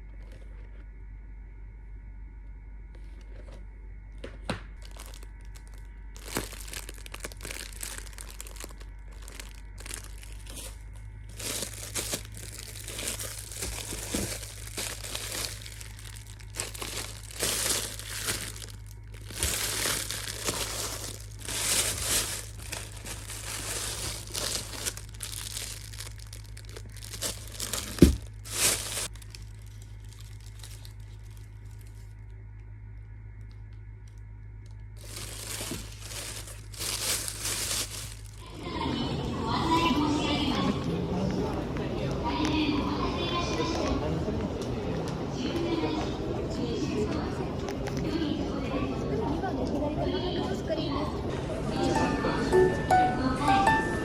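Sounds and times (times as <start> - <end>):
wrapping material crinkling: 4.8 - 32.4, 35.0 - 38.5.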